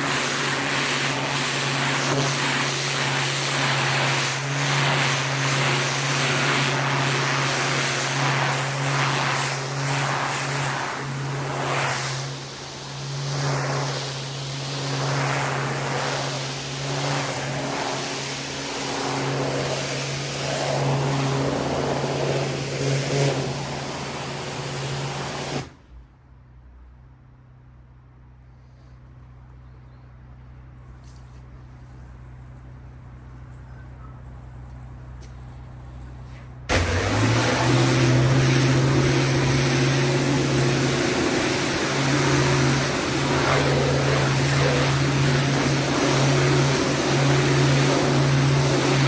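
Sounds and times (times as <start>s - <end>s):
pressure washer water jet hissing: 0.0s - 25.8s, 36.7s - 49.0s
machine humming: 36.7s - 49.0s.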